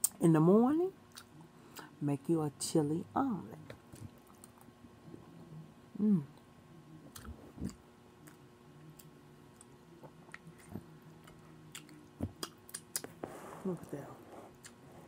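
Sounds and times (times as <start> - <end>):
person chewing with mouth smacks: 1.1 - 1.9, 7.1 - 13.2, 14.5 - 14.8.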